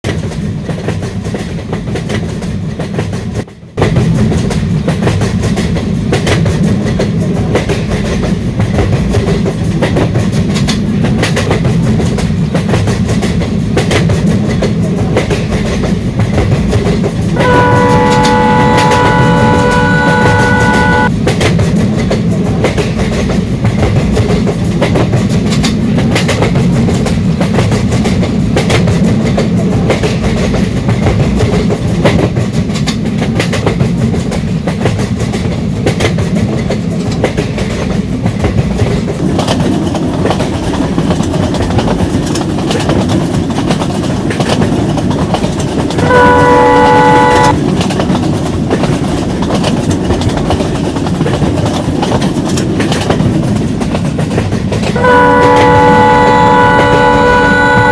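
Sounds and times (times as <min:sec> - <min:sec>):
train rumbling: 0:00.0 - 0:57.9
wheels clacking over rail joints: 0:00.1 - 0:57.9
train horn: 0:17.4 - 0:21.1, 0:46.0 - 0:47.6, 0:55.0 - 0:57.9.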